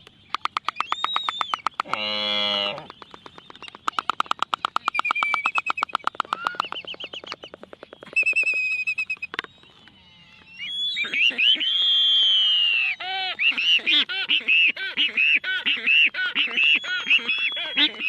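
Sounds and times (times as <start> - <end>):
wavering bird-like whistles: 0.3 - 18.0.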